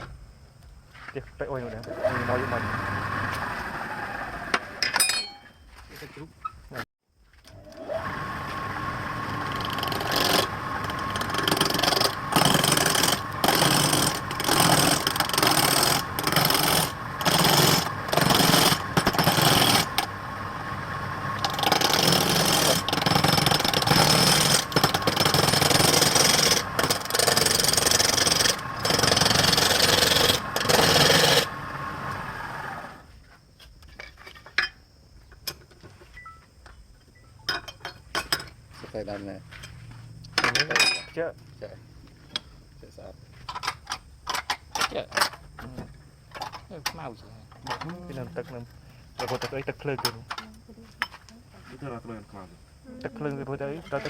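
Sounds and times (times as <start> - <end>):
motor tool whining and grinding: 1.8 - 4.8, 7.5 - 33.1.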